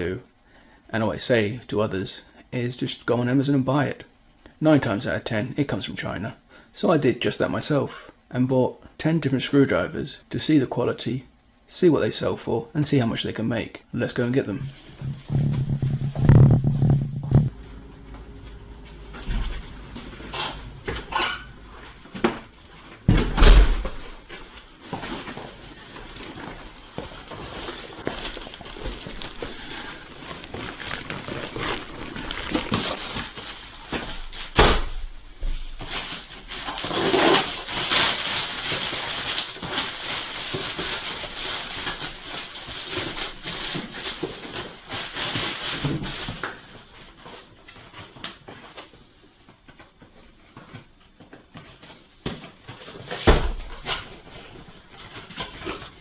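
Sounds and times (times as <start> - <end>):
rustling: 14.6 - 56.0
knocks and thuds: 15.0 - 17.6, 23.0 - 24.1.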